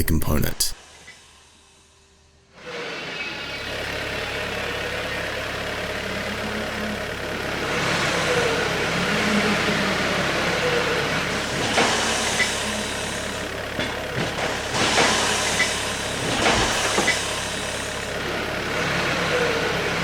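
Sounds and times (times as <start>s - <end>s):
engine running steadily: 3.2s - 20.0s
sharp clanks: 7.6s - 20.0s.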